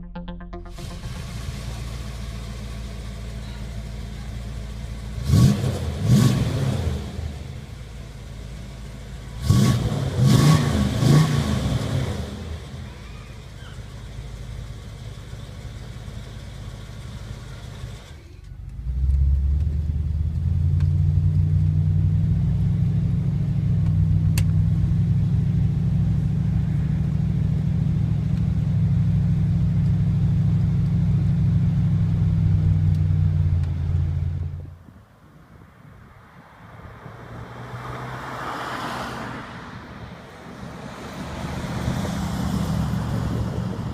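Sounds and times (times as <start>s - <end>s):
car engine idling and revving: 0.8s - 43.9s.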